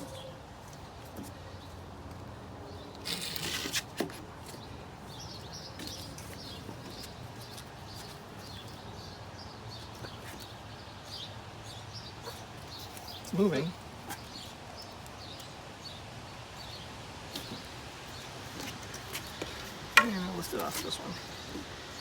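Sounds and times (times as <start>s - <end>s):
birds chirping faintly: 0.0s - 22.0s
wood scraping: 3.0s - 4.7s.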